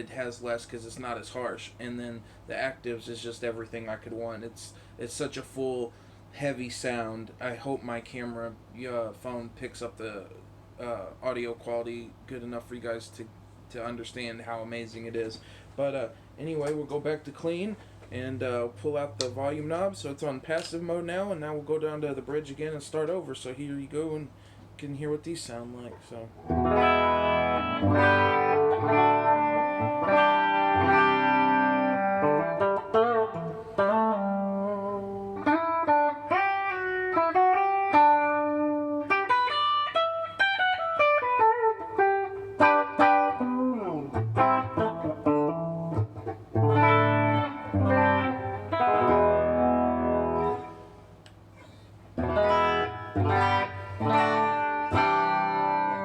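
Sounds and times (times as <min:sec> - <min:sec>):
clean electric guitar chords and notes: 0:26.4 - 0:51.5, 0:52.2 - 0:56.0.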